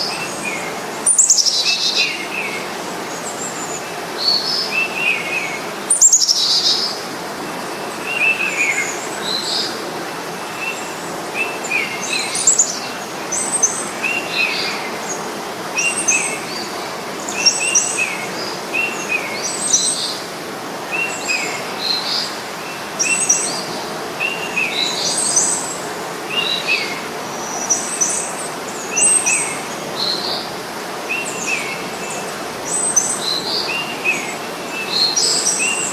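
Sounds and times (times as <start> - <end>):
small birds chirping: 0.0 - 9.8, 20.8 - 35.9.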